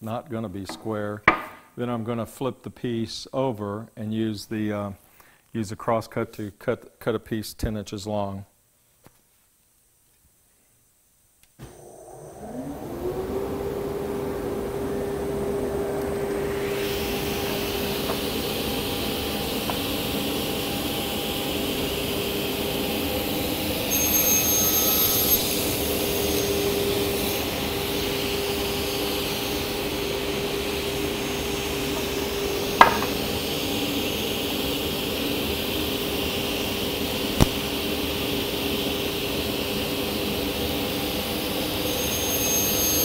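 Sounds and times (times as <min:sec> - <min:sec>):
sharp knocks: 0:00.7 - 0:01.7, 0:32.8 - 0:33.2
table saw humming: 0:11.6 - 0:35.7
saw blade cutting wood: 0:32.8 - 0:33.2.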